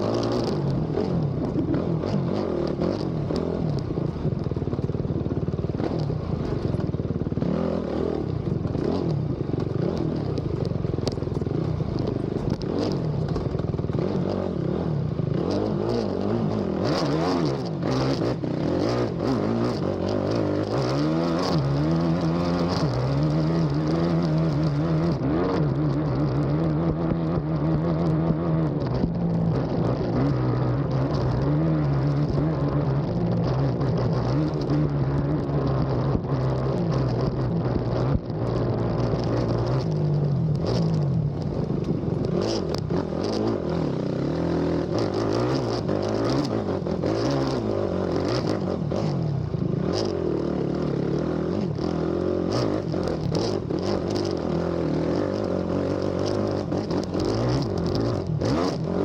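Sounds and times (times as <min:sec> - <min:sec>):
atv engine revving: 0:00.0 - 0:59.0.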